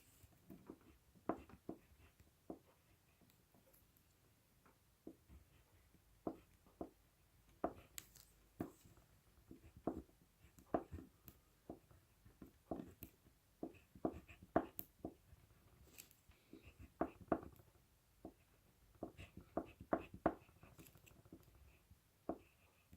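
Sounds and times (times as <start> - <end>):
crayon writing on paper: 0.0 - 3.7, 5.0 - 22.9.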